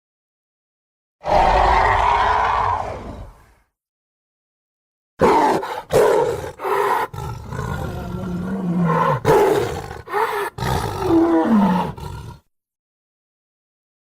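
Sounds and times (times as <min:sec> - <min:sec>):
creature roars and bellows: 0:01.2 - 0:03.6, 0:05.2 - 0:12.5.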